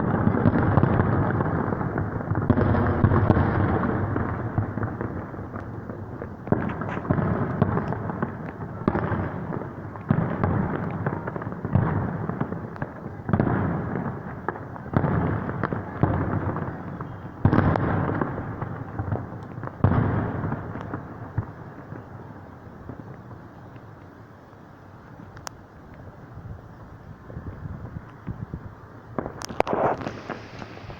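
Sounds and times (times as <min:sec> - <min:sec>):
fireworks shells bursting: 0:06.5 - 0:08.1, 0:29.2 - 0:30.9.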